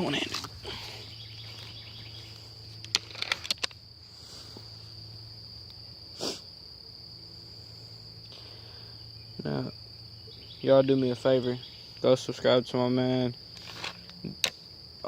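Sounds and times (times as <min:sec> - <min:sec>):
crickets chirping drone: 0:00.0 - 0:15.0
gun being loaded clicks: 0:02.9 - 0:03.8.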